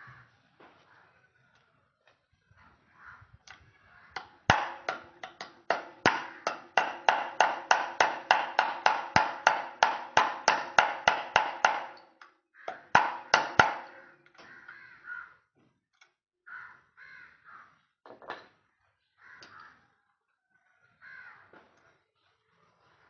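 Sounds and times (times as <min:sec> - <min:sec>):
metal struck in ringing taps: 0:04.2 - 0:14.5.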